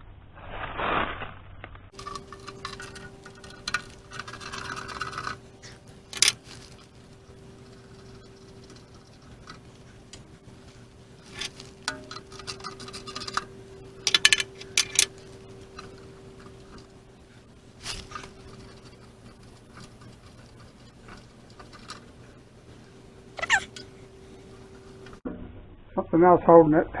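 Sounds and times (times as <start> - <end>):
steady low hum: 0.0 - 27.0
metallic clicks and clinks: 11.2 - 16.9
short squeak: 23.4 - 23.8.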